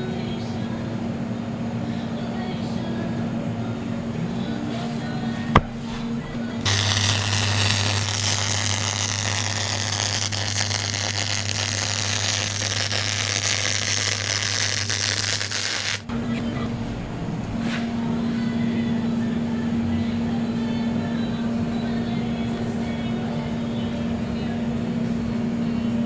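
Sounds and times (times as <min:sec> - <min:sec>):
low mains hum: 0:00.0 - 0:15.2, 0:16.0 - 0:26.0
arc welding crackling hiss: 0:06.2 - 0:16.1.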